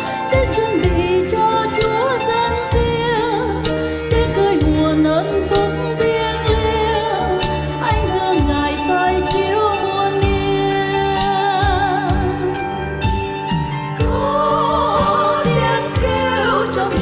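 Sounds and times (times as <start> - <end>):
choral hymn with instruments: 0.0 - 17.0.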